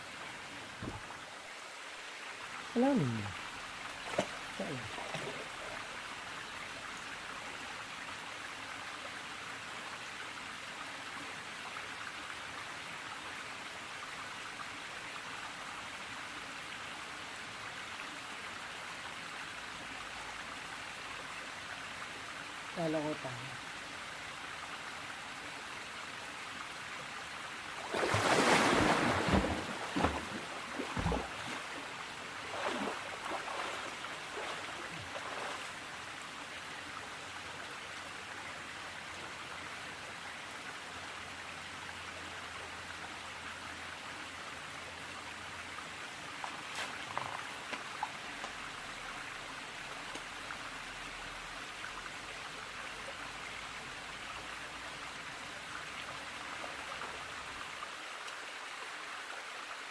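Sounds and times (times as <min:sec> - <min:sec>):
river water rushing: 0:00.0 - 0:06.3, 0:27.4 - 0:36.6
person splashing in water: 0:04.0 - 0:05.6, 0:27.8 - 0:31.8, 0:32.4 - 0:35.6.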